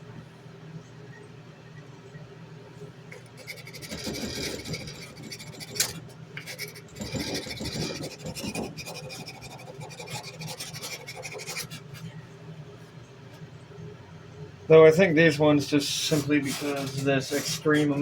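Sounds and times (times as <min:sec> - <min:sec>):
sandpaper rubbing knife blade: 0:16.1 - 0:18.0.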